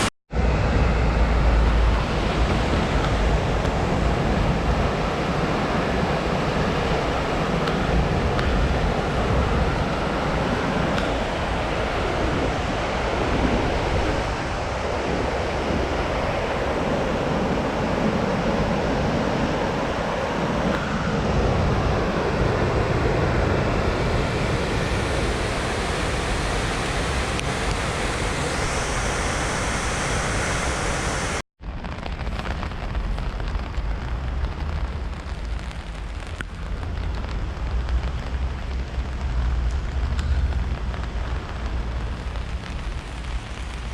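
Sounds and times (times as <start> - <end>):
river water rushing: 0.8 - 31.4.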